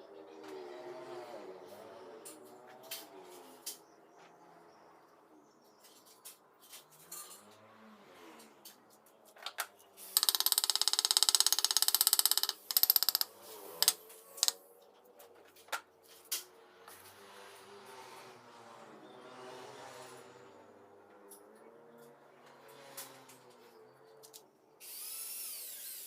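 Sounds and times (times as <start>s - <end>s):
metallic taps and clinks: 10.2s - 14.6s.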